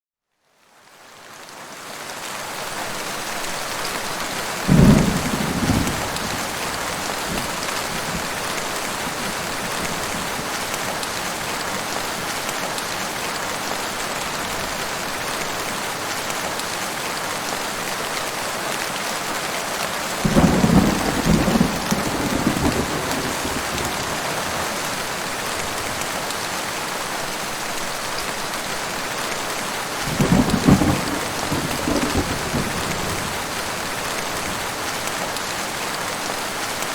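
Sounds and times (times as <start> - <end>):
heavy rain: 0.5 - 36.9
thunder rumbling: 4.7 - 10.5, 20.2 - 24.8, 30.1 - 33.5.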